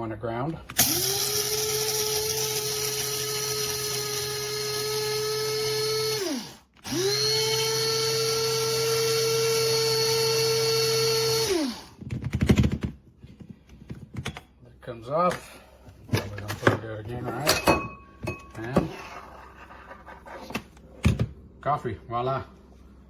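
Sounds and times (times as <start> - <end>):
coffee grinder whirring: 0.8 - 12.0.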